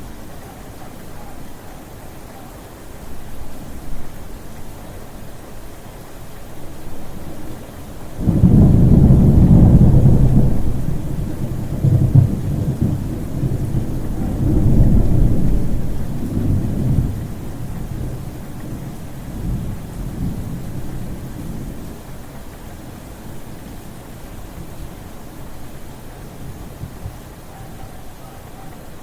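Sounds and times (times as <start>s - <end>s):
thunder crack and rumble: 8.2s - 22.0s.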